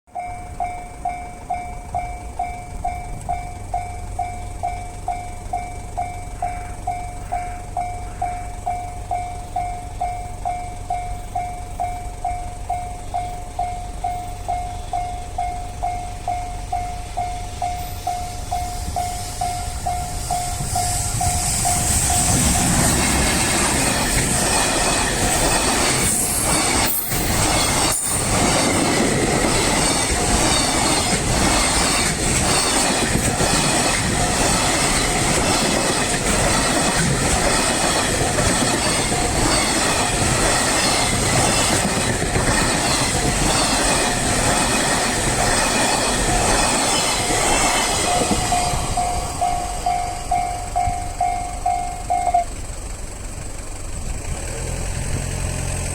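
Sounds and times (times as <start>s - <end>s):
level crossing bell ringing: 0.1s - 21.9s, 47.2s - 52.6s
train passing with rail noise: 0.1s - 55.9s.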